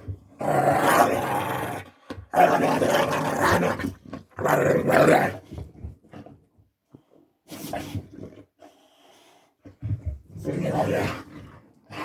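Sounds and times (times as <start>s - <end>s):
dog growling playfully: 0.3s - 5.4s.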